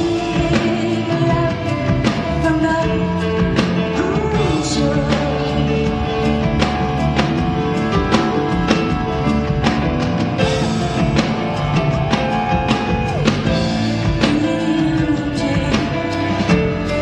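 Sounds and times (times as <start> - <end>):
bass and keyboard notes: 0.0 - 17.0
drums keeping a steady beat: 0.0 - 17.0
woman singing long notes: 3.9 - 6.6.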